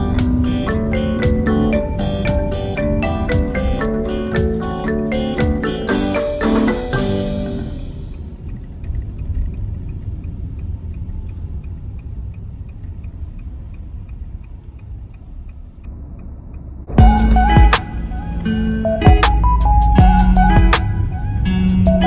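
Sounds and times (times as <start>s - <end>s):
car interior engine and road rumble: 0.0s - 22.0s
turn signal ticking: 0.0s - 22.0s.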